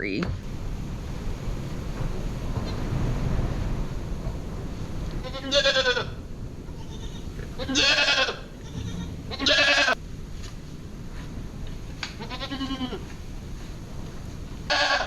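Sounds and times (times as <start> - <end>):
goat bleating: 5.2 - 10.0, 12.2 - 13.1, 14.7 - 15.0.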